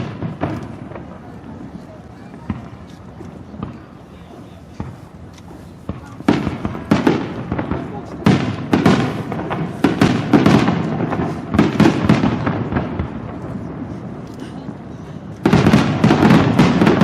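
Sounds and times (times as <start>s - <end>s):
fireworks bangs: 0.0s - 17.0s
fireworks crackling: 0.0s - 17.0s.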